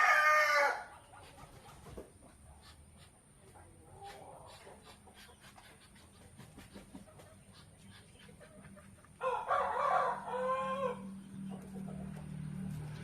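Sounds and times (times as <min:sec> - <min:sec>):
rooster crowing: 0:00.0 - 0:00.9, 0:09.2 - 0:11.2.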